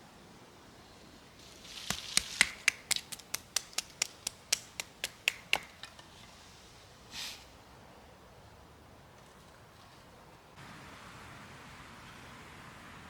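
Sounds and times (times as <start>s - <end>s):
soft rustle: 0.8s - 4.6s.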